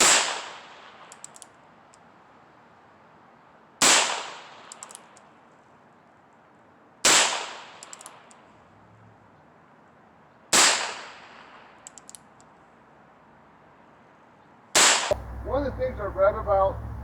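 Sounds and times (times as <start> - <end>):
revolver hammer cocking clicks: 1.1 - 2.0, 4.7 - 5.3, 7.8 - 8.4, 11.8 - 12.5.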